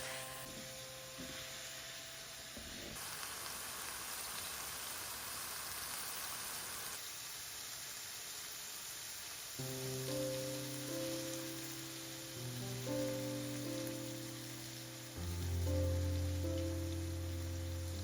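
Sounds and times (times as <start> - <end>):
soft background music: 0.0 - 3.0, 9.6 - 18.0
food sizzling in a frying pan: 0.0 - 18.0.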